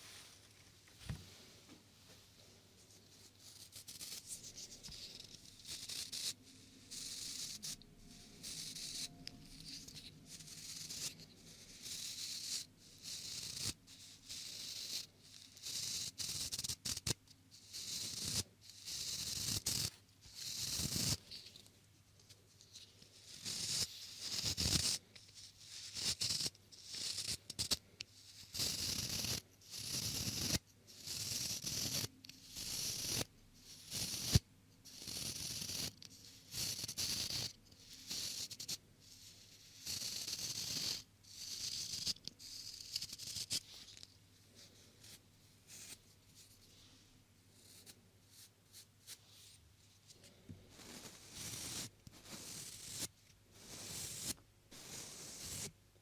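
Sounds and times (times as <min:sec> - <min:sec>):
soft thud of contact: 0:01.0 - 0:02.2
rubbing on microphone: 0:50.2 - 0:53.0.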